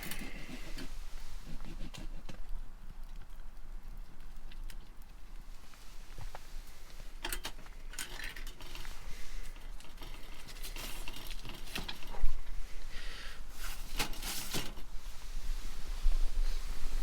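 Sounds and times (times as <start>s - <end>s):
rustling bursts: 0.0s - 2.4s
wood stove crackling: 0.0s - 17.0s.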